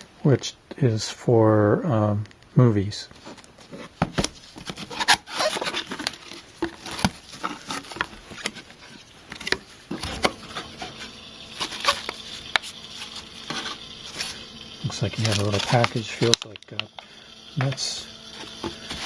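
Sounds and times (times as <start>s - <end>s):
cardboard box being handled: 3.2s - 14.4s
packaging rustling: 3.2s - 17.0s.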